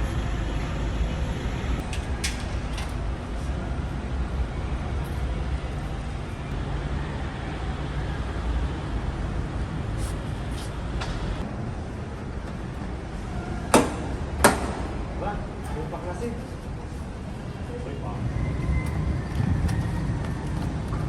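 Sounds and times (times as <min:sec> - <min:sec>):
sharp knocks: 0:13.8 - 0:15.0.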